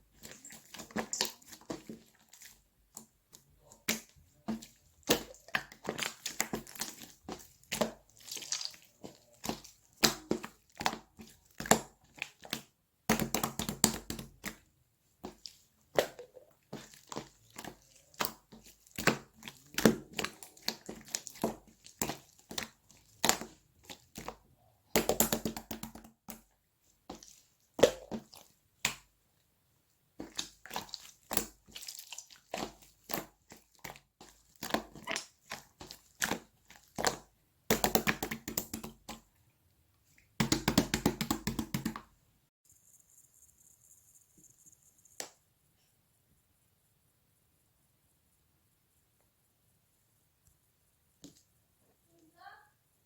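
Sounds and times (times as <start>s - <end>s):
slime squishing and popping: 3.7s - 14.6s, 15.2s - 26.4s, 27.1s - 29.1s, 30.2s - 39.3s, 40.4s - 42.1s.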